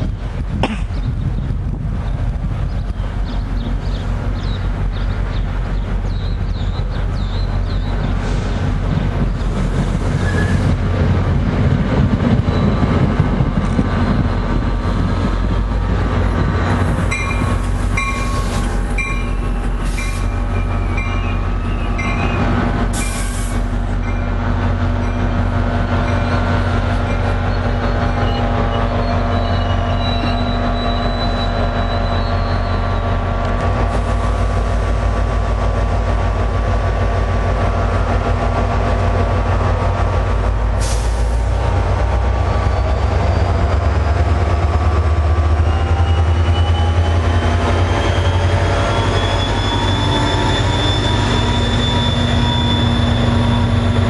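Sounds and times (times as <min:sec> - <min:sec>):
locomotive engine hum: 0:00.0 - 0:54.0
wheels clattering on rail: 0:00.0 - 0:54.0
wheels squealing: 0:09.3 - 0:10.8, 0:26.0 - 0:33.2, 0:45.6 - 0:54.0.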